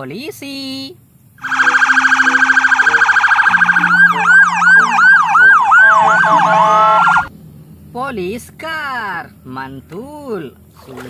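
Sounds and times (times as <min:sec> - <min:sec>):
electronic police siren: 0:01.4 - 0:07.3.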